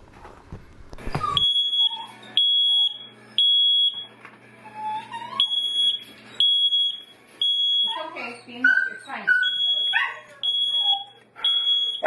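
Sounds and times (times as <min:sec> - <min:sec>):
smoke alarm beeping: 0:01.4 - 0:04.2, 0:05.4 - 0:12.0.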